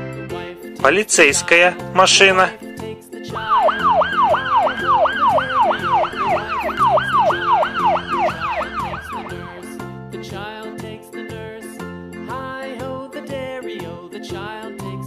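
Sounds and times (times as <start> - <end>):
light background music: 0.0 - 15.0
police siren yelping: 3.4 - 9.6.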